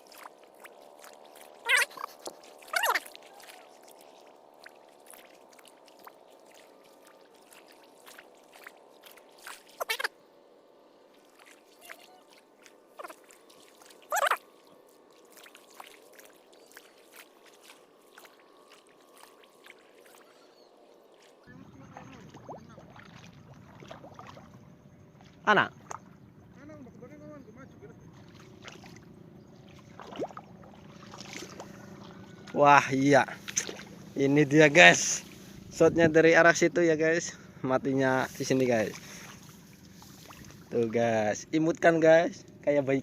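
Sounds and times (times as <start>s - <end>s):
faint steady drone: 0.0s - 43.0s
downward sweeping animal calls: 14.1s - 14.5s.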